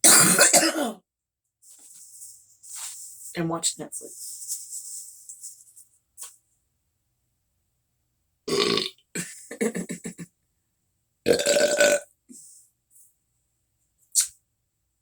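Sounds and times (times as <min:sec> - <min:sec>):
loud belching: 0:08.5 - 0:09.0, 0:11.3 - 0:12.1.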